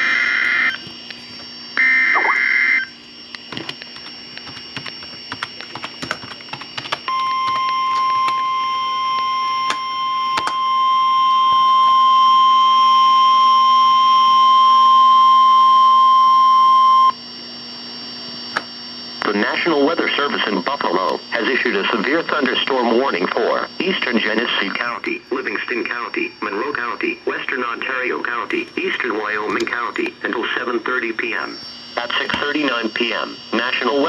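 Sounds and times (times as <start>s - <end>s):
steady warning alarm tone: 0.0s - 17.3s, 18.4s - 34.0s
clicks and crackle: 3.3s - 8.5s, 9.1s - 10.6s.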